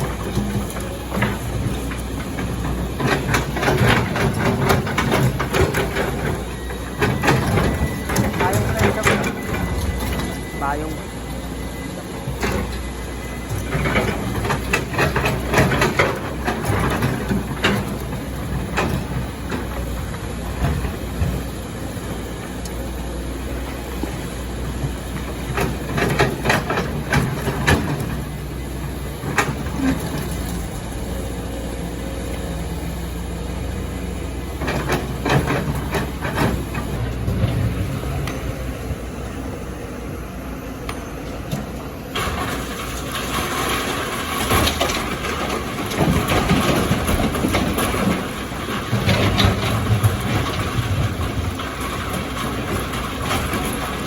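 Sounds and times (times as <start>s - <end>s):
diesel engine running: 0.0s - 54.0s
rock and sand clattering: 42.2s - 54.0s.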